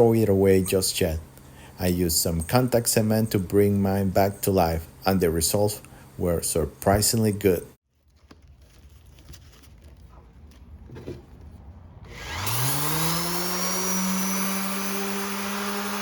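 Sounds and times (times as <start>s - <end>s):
orbital sander motor whine: 12.1s - 16.0s.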